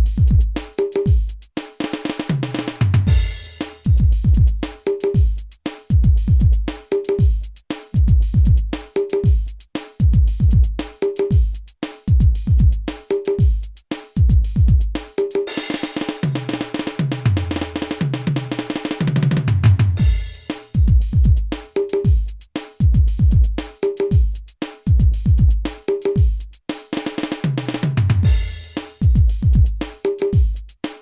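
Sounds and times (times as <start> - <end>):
snare and rim strikes: 1.6 - 4.0, 15.0 - 20.8, 26.7 - 29.2.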